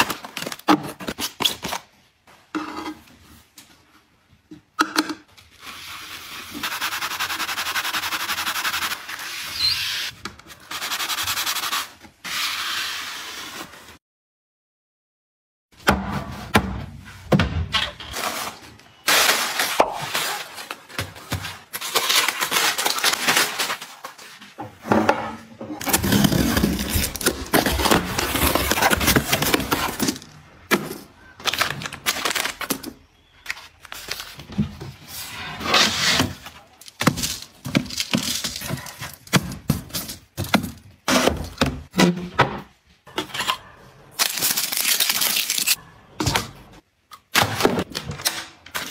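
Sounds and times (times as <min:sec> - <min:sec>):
packaging rustling: 0:44.2 - 0:45.8.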